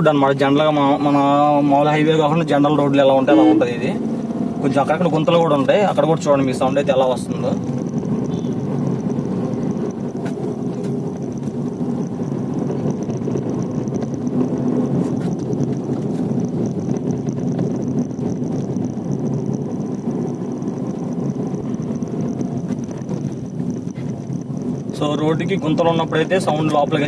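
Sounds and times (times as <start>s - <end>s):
car engine hum: 0.0s - 27.0s
road and tyre noise: 0.0s - 27.0s.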